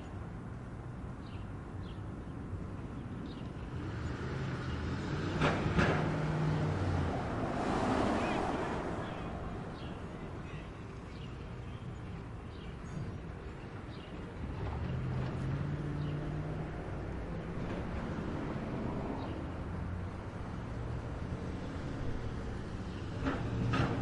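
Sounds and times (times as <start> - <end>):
vehicle passing: 3.8 - 10.4, 14.6 - 24.0.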